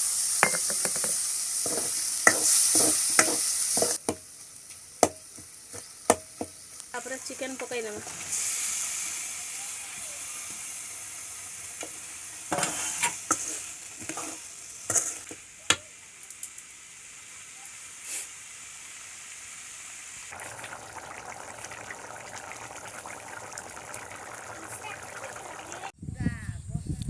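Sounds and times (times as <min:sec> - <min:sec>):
masala sizzling in hot oil: 0:00.0 - 0:26.0
spoon scraping against pan: 0:00.4 - 0:04.1, 0:12.5 - 0:15.3.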